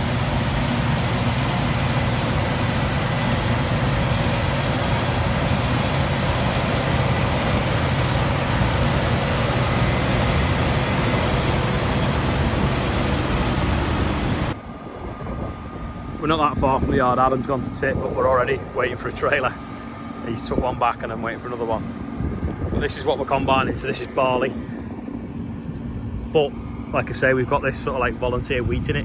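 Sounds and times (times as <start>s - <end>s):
combine harvester engine hum: 0.0s - 29.0s
threshing machinery rushing: 0.0s - 29.0s.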